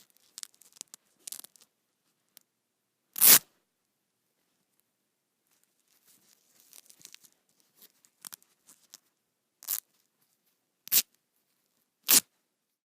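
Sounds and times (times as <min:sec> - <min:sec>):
velcro ripping apart: 0:03.2 - 0:03.4, 0:09.6 - 0:09.9, 0:10.9 - 0:11.1, 0:12.0 - 0:12.3.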